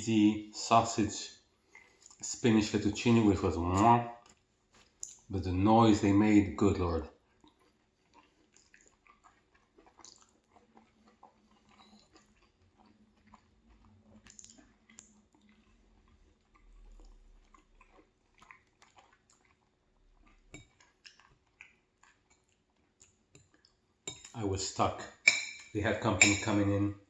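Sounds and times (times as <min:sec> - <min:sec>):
wet chewing clicks: 0:07.1 - 0:23.9.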